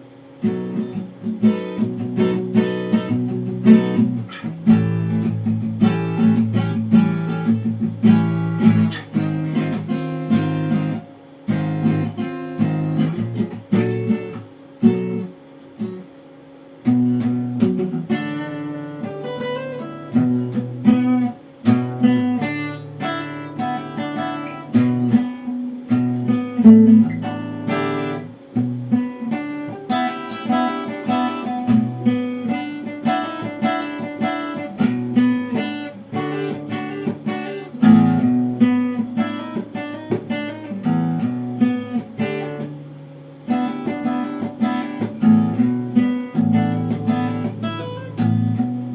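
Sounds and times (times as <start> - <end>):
guitar chords strummed and picked: 0.0 - 48.9.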